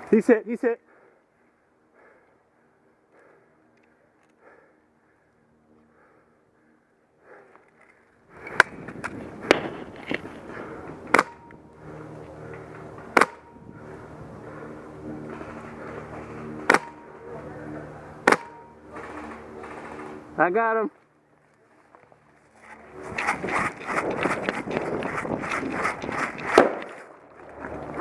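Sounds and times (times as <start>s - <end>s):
airsoft rifle shots: 11.1s - 11.4s, 13.1s - 13.5s, 16.6s - 17.0s, 18.2s - 19.9s, 26.2s - 27.0s
rustling movement: 21.0s - 27.1s.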